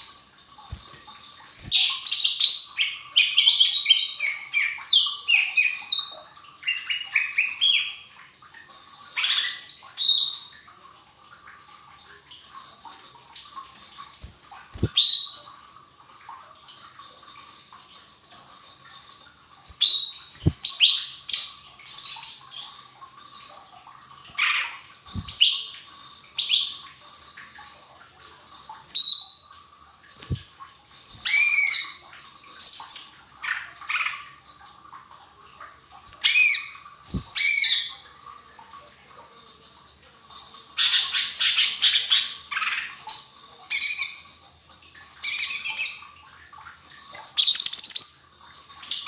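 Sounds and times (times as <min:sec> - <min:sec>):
bird chirping and whistling: 0:47.4 - 0:48.1.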